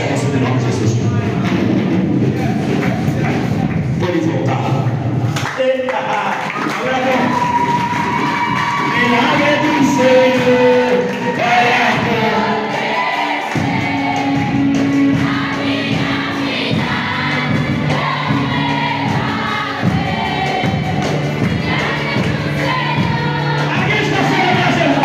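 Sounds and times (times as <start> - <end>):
choir singing a worship song: 7.2 - 25.0.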